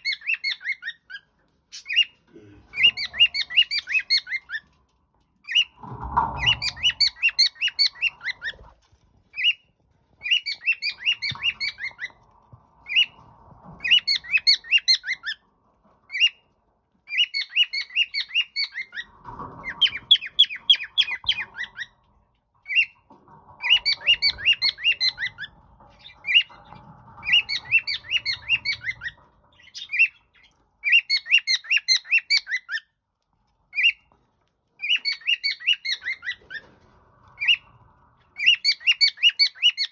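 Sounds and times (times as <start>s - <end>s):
cockatiel chirping: 0.0s - 4.7s, 10.2s - 12.1s, 13.8s - 15.4s, 17.1s - 19.0s, 27.2s - 32.9s, 34.8s - 36.7s, 38.4s - 39.9s.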